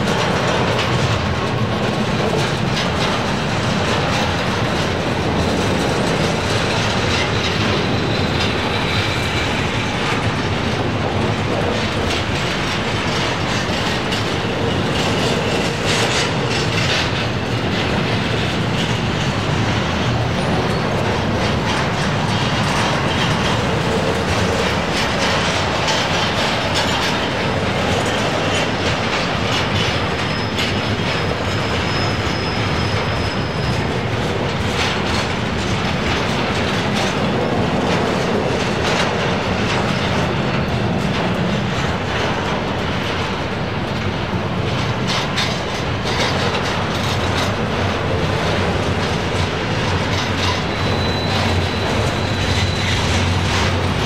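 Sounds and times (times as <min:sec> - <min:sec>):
freight train wheels rumbling: 0:00.0 - 0:54.0
faint high wheel squeal: 0:30.0 - 0:34.2, 0:50.0 - 0:54.0.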